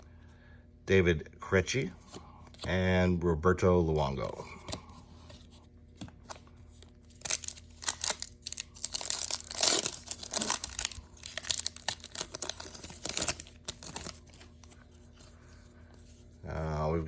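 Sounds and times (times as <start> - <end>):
foil wrapper tearing and crinkling: 7.0 - 14.5.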